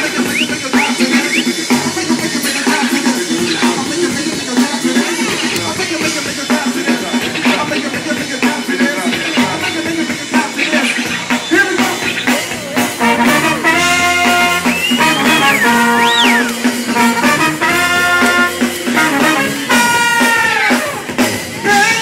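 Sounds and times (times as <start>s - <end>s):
drum kit: 0.0s - 22.0s
funk band playing: 0.0s - 22.0s
brass horns holding long notes: 13.0s - 22.0s.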